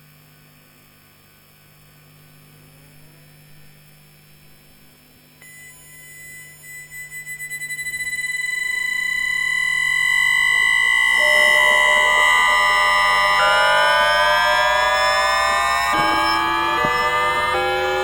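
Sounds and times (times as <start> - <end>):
train traction inverter whine: 5.4 - 18.0.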